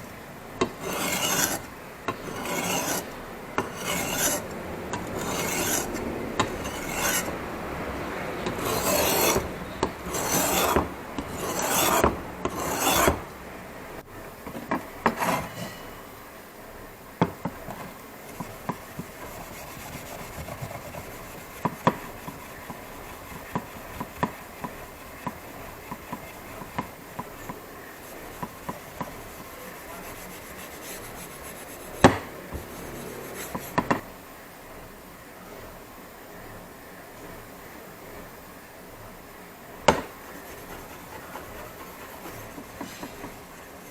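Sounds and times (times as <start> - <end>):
file scraping metal: 0.6 - 13.3, 15.0 - 15.9, 17.8 - 34.1, 39.9 - 43.9.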